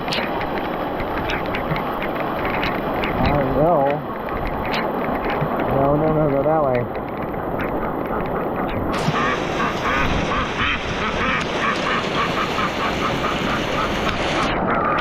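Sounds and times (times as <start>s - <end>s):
hail and wind hiss: 0.0s - 15.0s
duck quacking: 4.6s - 5.5s, 7.6s - 15.0s.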